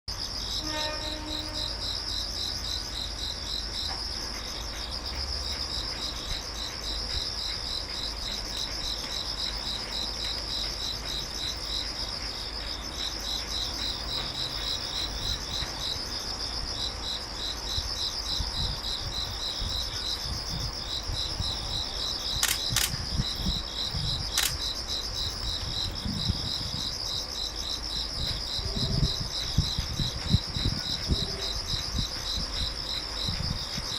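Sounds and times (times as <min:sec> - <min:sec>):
insects singing: 0:00.1 - 0:33.9
sharp clicks: 0:22.4 - 0:23.0, 0:24.3 - 0:24.6.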